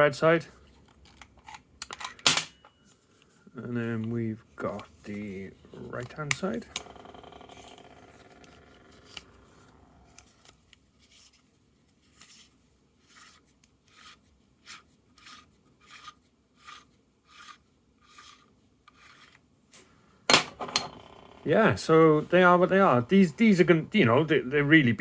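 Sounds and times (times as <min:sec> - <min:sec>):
soft rubbing strokes: 0:09.4 - 0:20.0.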